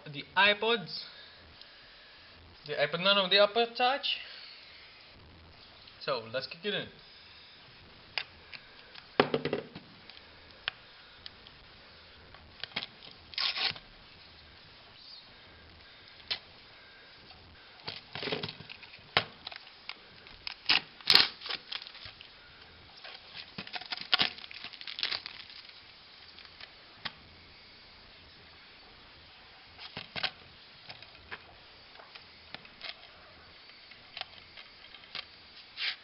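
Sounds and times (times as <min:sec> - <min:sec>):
plastic wrapping tearing and crinkling: 0:12.6 - 0:13.9, 0:17.8 - 0:22.3, 0:23.0 - 0:26.7.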